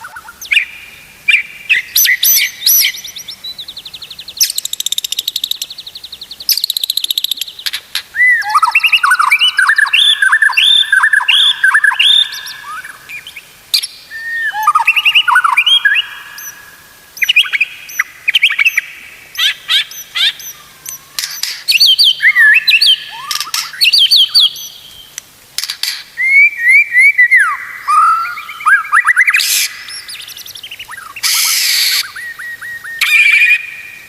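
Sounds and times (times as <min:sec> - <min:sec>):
songbird singing varied song: 0:00.0 - 0:34.0.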